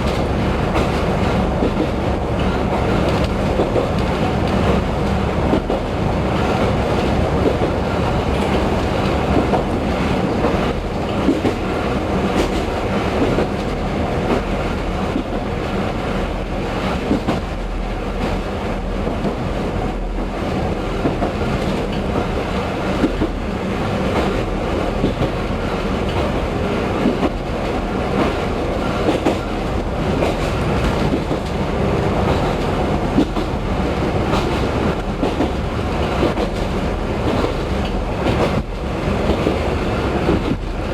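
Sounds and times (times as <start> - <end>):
train running noise: 0.0 - 40.9
wheels clicking over rail joints: 24.0 - 40.8.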